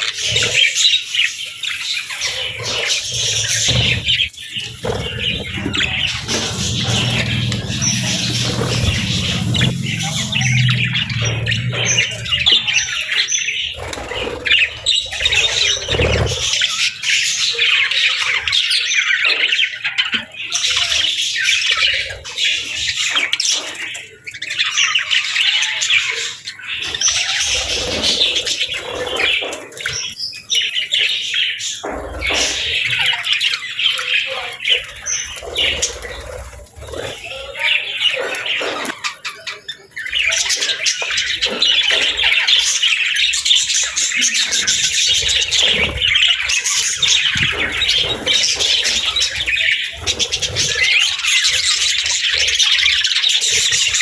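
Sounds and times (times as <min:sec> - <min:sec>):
budgerigars chirping and squawking: 0:00.0 - 0:54.0.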